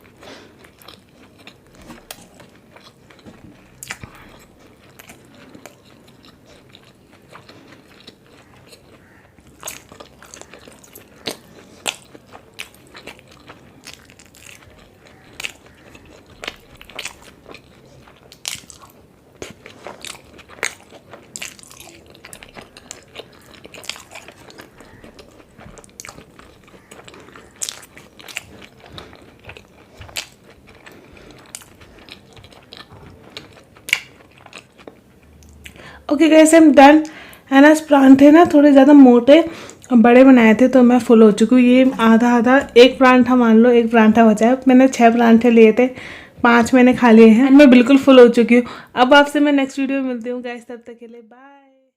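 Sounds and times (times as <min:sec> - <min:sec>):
person chewing and biting: 0:00.0 - 0:35.8.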